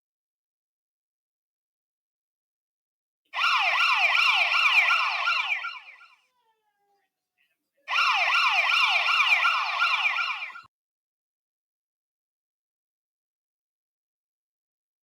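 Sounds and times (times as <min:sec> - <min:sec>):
siren yelping: 0:03.4 - 0:06.6, 0:07.9 - 0:10.7.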